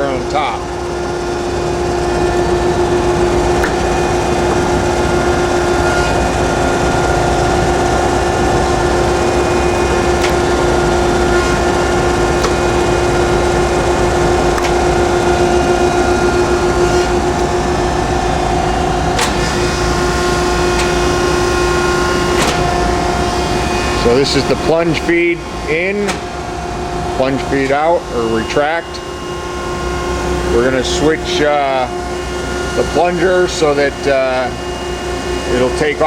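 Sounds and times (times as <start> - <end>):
grinder machine humming: 0.4 - 27.2.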